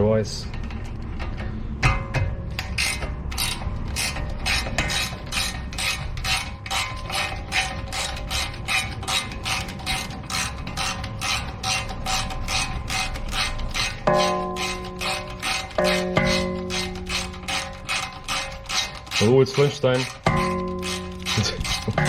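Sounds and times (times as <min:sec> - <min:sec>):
ratchet wrench clicking: 0:02.6 - 0:22.0.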